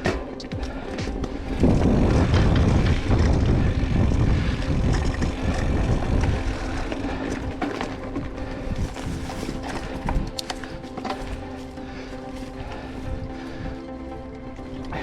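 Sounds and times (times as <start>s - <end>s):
bike tyre rumble on dirt: 0.0s - 15.0s
wind buffeting microphone: 0.0s - 15.0s.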